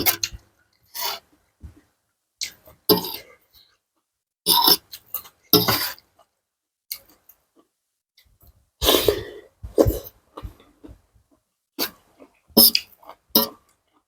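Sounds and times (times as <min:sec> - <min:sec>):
wet mouth clicks: 0:12.6 - 0:13.5.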